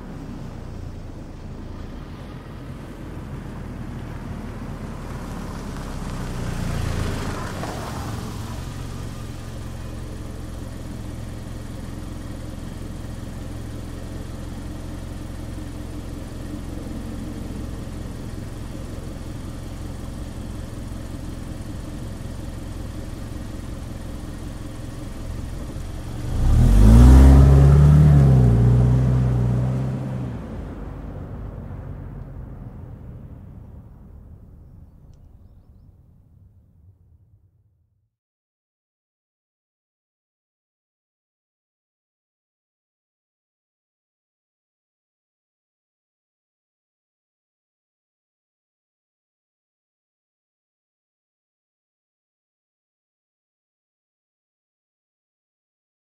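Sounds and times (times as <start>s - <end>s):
car accelerating away: 0.0s - 36.0s
car engine idling: 0.0s - 37.6s.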